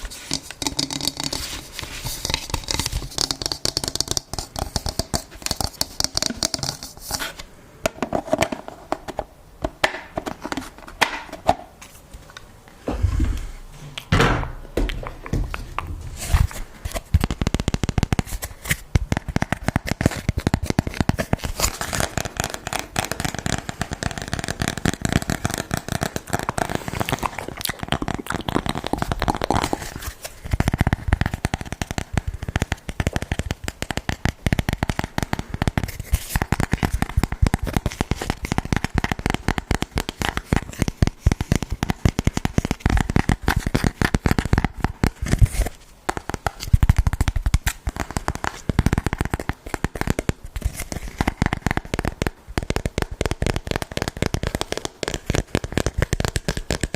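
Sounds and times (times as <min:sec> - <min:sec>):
fingertip tapping: 0:30.5 - 0:45.0, 0:46.1 - 0:56.9.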